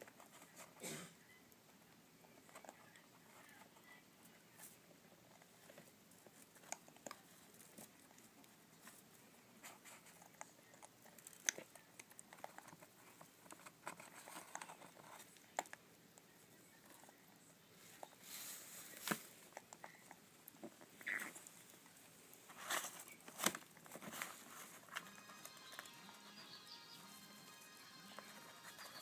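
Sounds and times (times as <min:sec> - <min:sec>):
parrot chicks shuffling and nibbling: 0:00.0 - 0:29.0
scratchy rustles: 0:11.0 - 0:15.5, 0:20.6 - 0:25.4.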